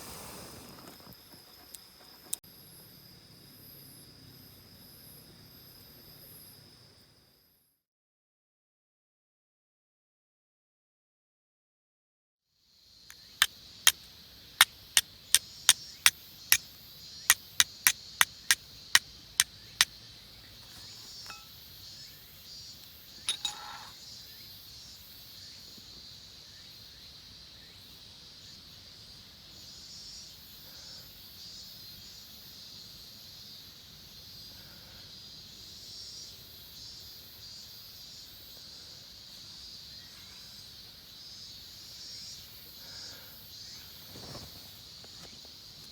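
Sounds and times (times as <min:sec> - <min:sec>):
insects chirring: 0:13.1 - 0:25.7
sharp clicks: 0:17.3 - 0:18.6
ringing clink: 0:21.2 - 0:21.5, 0:23.3 - 0:23.9.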